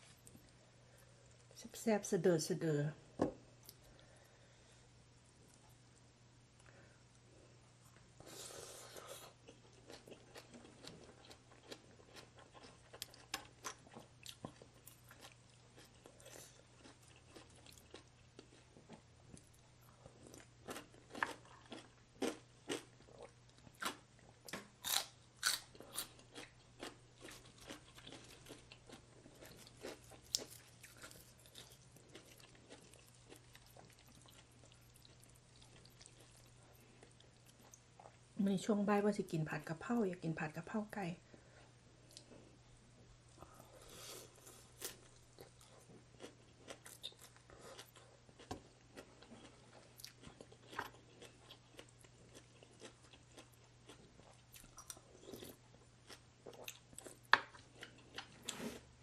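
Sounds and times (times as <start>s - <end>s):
faint low hum: 0.0s - 59.0s
crunchy food chewing: 7.9s - 38.2s, 43.4s - 58.9s.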